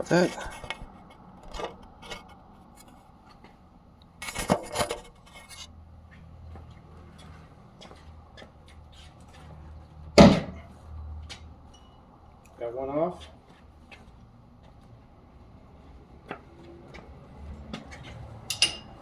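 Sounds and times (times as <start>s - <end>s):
sharp metal clunk: 10.2s - 10.6s, 18.5s - 19.0s.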